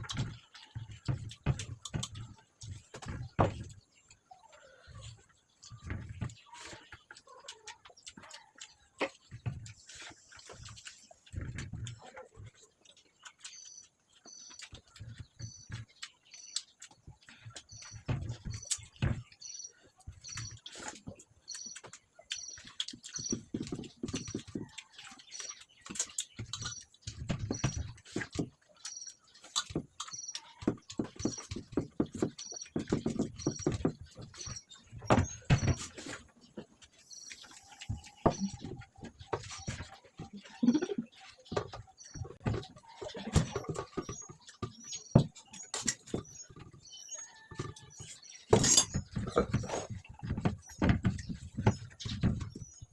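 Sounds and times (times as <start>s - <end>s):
chewing and mouth smacks: 6.4s - 17.8s, 18.6s - 27.3s, 27.9s - 31.7s.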